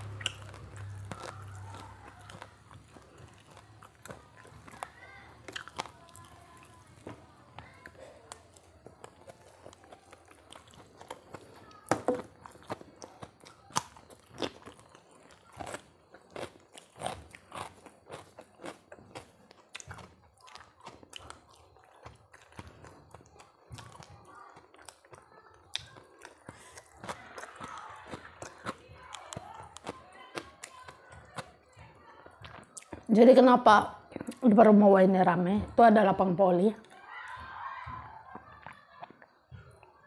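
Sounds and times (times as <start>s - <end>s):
crunchy bites: 0.0s - 31.5s
wet chewing: 0.0s - 33.2s.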